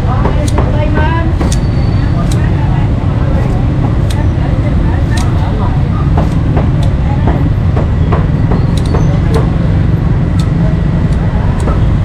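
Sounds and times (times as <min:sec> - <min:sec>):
steady low rumble: 0:00.0 - 0:12.0
cleaver chopping meat on wood: 0:06.1 - 0:09.6.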